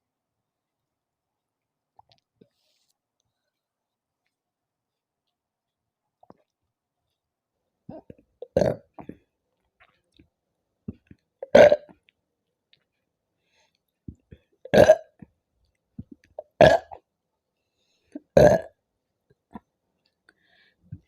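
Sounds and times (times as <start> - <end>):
person burping loudly: 7.9 - 9.2, 11.4 - 12.0, 14.7 - 15.2, 16.4 - 17.0, 18.3 - 18.8.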